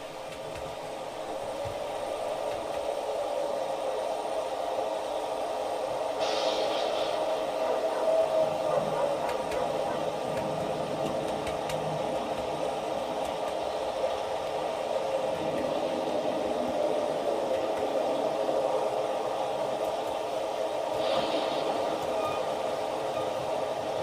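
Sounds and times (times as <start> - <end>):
storm effect rushing noise: 5.8 - 9.9, 15.1 - 24.0.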